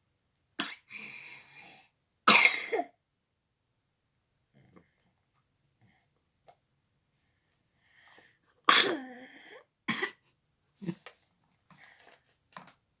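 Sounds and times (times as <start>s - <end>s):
child sneezing: 8.7s - 9.2s.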